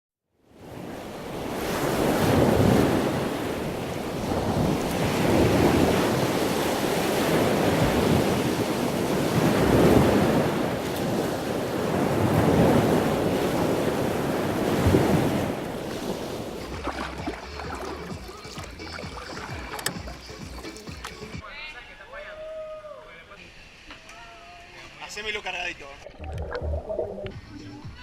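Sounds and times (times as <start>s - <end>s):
waves breaking: 0.5s - 21.4s
wind buffeting microphone: 0.8s - 16.6s.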